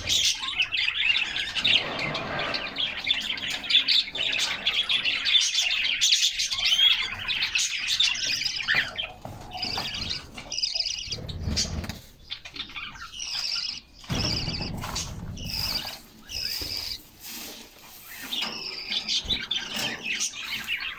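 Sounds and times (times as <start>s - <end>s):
canaries singing: 0.0s - 20.9s
wings fluttering: 13.1s - 17.1s.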